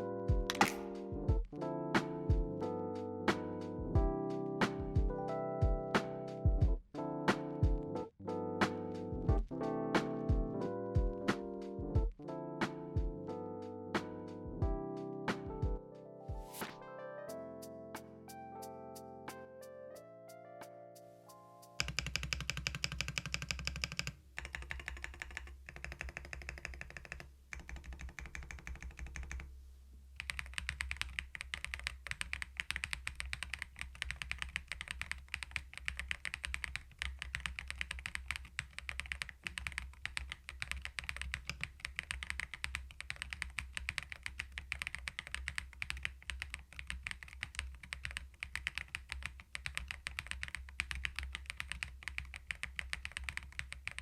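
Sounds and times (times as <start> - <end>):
fast typing on mechanical keyboard: 21.8 - 29.5, 30.2 - 54.0.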